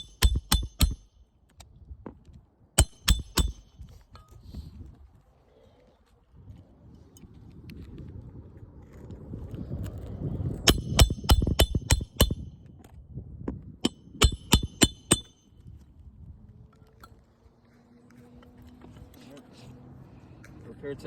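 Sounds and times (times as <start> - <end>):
hammer striking roofing nails: 0.0 - 1.2, 2.8 - 3.8, 10.6 - 12.5, 13.8 - 15.3.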